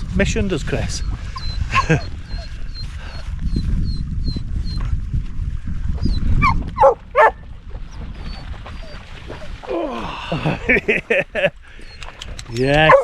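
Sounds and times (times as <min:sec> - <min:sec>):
wind rumbling on microphone: 0:00.0 - 0:13.0
yelping animal calls: 0:01.3 - 0:02.9, 0:06.4 - 0:07.4.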